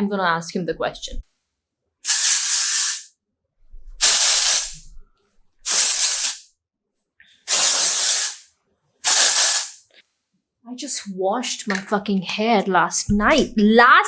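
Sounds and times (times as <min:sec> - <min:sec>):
aerosol spray can hissing: 0:02.0 - 0:03.1, 0:04.0 - 0:04.8, 0:05.6 - 0:06.5, 0:07.5 - 0:09.8.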